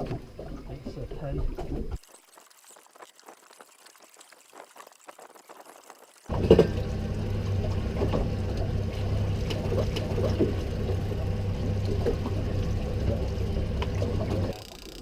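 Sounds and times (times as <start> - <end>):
water splashing along hull: 0.0 - 15.0
boat engine humming: 5.9 - 15.0.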